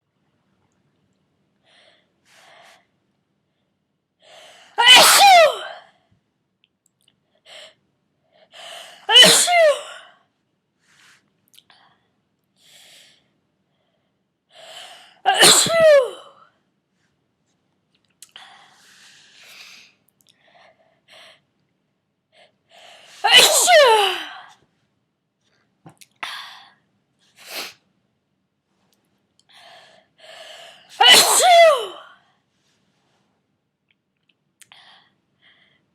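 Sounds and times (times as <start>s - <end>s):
person sneezing: 4.8s - 5.8s, 9.0s - 10.0s, 15.3s - 16.3s, 23.1s - 24.4s, 30.8s - 32.1s.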